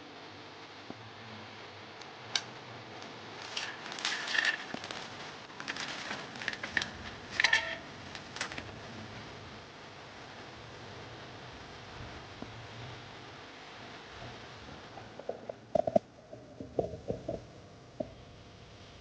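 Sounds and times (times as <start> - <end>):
handling clicks and rustling: 3.4 - 8.7.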